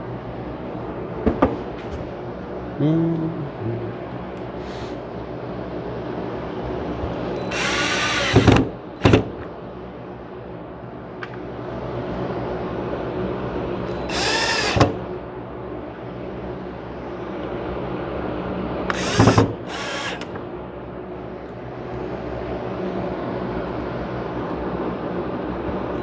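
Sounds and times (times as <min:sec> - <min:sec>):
power drill driving screws: 0:07.4 - 0:09.3, 0:13.9 - 0:15.0, 0:18.9 - 0:20.3.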